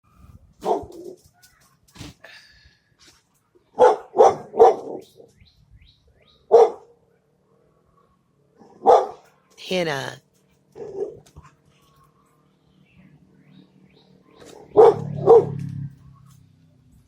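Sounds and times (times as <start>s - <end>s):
dog barking: 0.6s - 1.2s, 3.8s - 5.2s, 6.5s - 6.9s, 8.7s - 9.2s, 10.8s - 11.2s, 14.7s - 15.6s.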